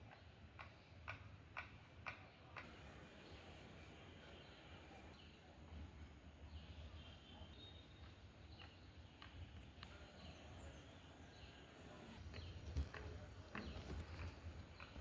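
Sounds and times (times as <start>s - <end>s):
low rumble of wind: 2.6s - 15.0s
faint bird chirps: 2.7s - 12.7s.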